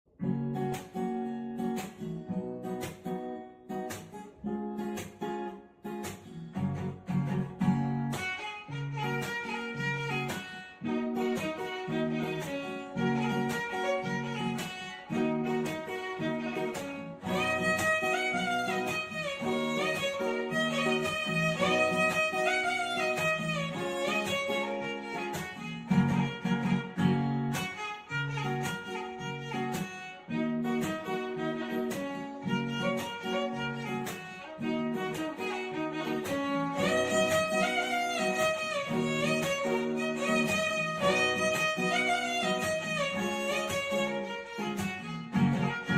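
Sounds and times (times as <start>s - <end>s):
instrumental background music: 6.0s - 45.9s.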